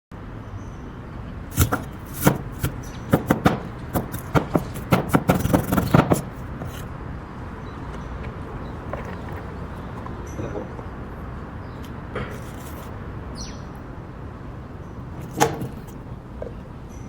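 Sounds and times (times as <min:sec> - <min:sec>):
knife chopping on cutting board: 0:01.5 - 0:06.8.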